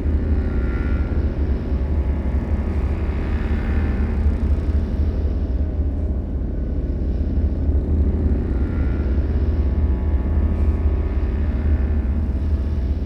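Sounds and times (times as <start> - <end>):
deep rumbling drone: 0.0 - 13.0.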